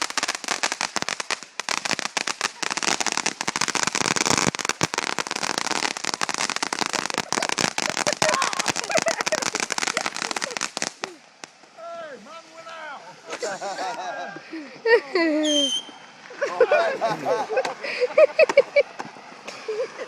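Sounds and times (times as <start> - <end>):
fireworks fizzing and crackling: 0.0 - 20.0.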